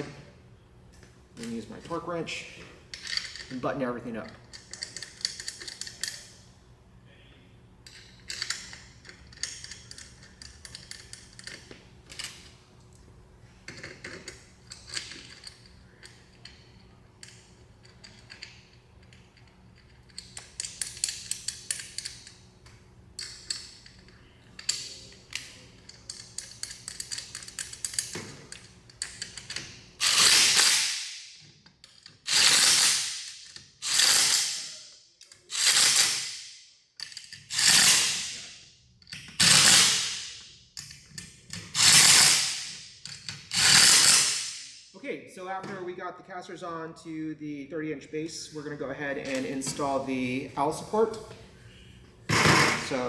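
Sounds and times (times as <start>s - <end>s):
ratcheting torque wrench: 24.6s - 31.1s, 31.9s - 34.7s, 35.3s - 36.4s, 37.0s - 38.4s, 39.3s - 40.3s, 41.6s - 44.7s.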